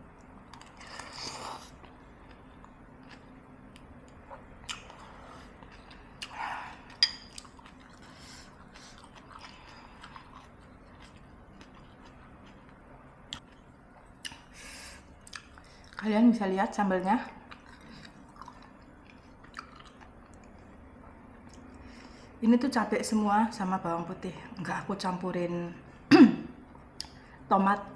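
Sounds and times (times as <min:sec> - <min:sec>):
person chewing and biting: 0:07.3 - 0:13.6.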